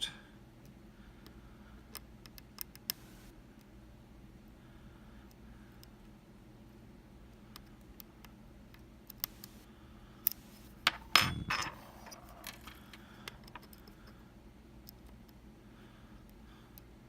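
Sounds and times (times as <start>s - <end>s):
lock picks clicking and scraping: 10.3s - 14.2s
metallic rattle and scrape: 10.9s - 13.0s.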